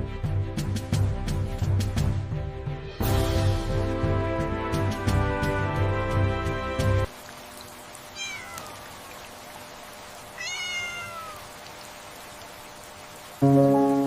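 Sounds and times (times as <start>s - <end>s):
background music: 0.0s - 7.1s, 13.4s - 14.0s
cat meowing: 8.1s - 8.9s, 10.4s - 11.6s.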